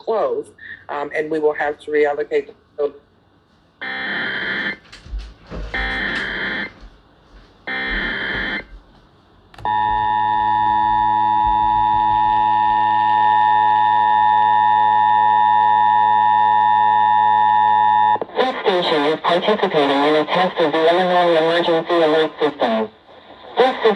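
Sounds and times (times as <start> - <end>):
two-tone attention signal: 5.8 - 6.7, 9.6 - 14.8.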